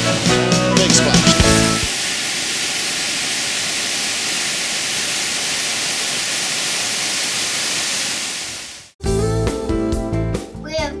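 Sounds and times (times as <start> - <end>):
waterfall rushing: 0.4 - 9.0.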